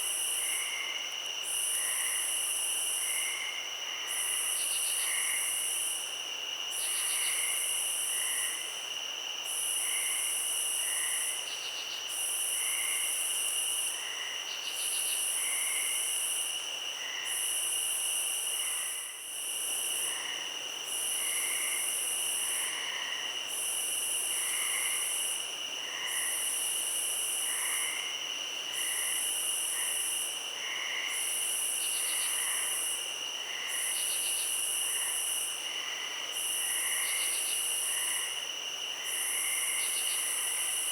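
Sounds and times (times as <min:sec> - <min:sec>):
high insect trills: 0:09.8 - 0:40.9
low insect chirps: 0:36.3 - 0:38.3, 0:39.0 - 0:40.9.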